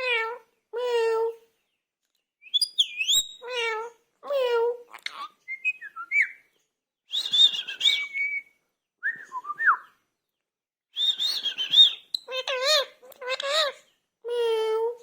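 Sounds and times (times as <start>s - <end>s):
parrot whistling and chattering: 2.4s - 3.7s, 4.9s - 6.4s, 7.1s - 8.5s, 11.0s - 13.8s.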